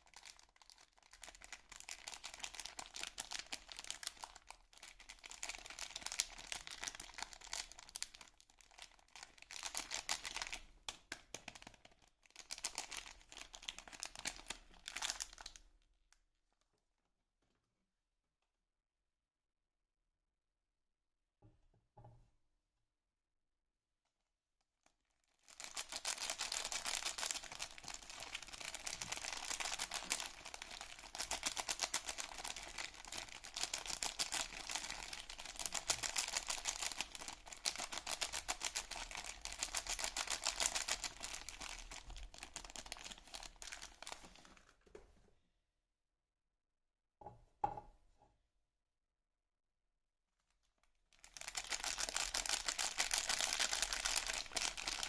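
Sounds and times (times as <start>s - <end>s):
packaging crinkling: 0.0s - 15.6s, 25.4s - 44.7s, 51.2s - 55.0s.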